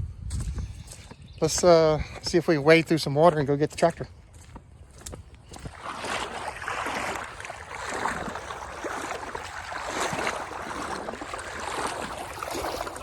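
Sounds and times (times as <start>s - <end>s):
water sloshing around wading legs: 3.8s - 13.0s.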